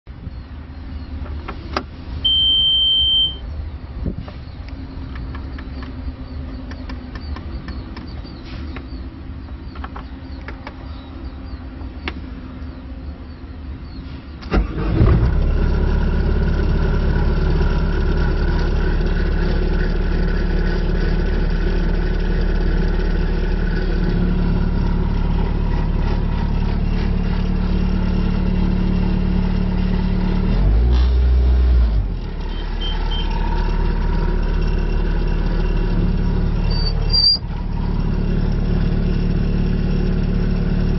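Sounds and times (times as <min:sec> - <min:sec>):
diesel engine cranking and running: 0:03.3 - 0:40.9.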